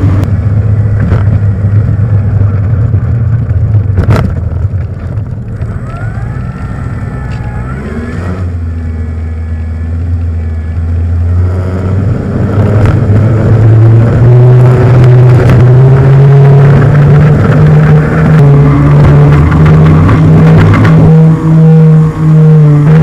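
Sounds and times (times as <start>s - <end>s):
model plane motors droning: 5.5s - 11.4s.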